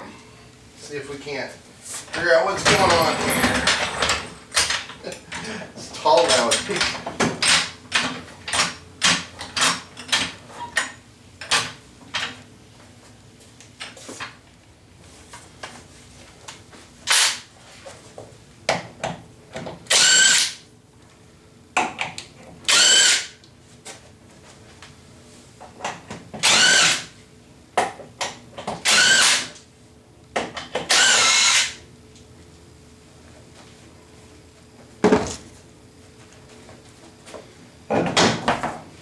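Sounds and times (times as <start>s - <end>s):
cordless drill whining: 19.9s - 20.4s, 22.7s - 23.2s, 26.4s - 27.0s, 28.9s - 29.4s, 30.9s - 31.8s.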